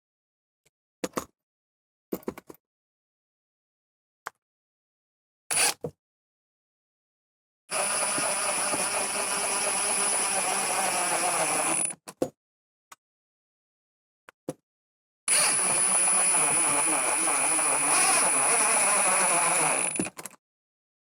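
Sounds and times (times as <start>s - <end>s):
power tool whining: 7.7s - 12.0s, 15.3s - 20.2s.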